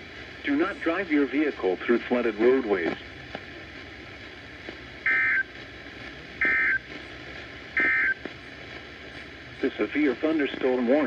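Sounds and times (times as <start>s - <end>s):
radio static: 0.4s - 3.2s, 5.0s - 5.6s, 6.2s - 11.0s
two-tone digital data bursts: 5.1s - 5.5s, 6.4s - 6.8s, 7.8s - 8.2s.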